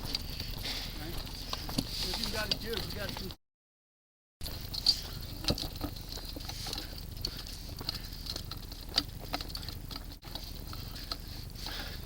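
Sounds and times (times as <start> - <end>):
footsteps crunching on rough ground: 0.0 - 3.4.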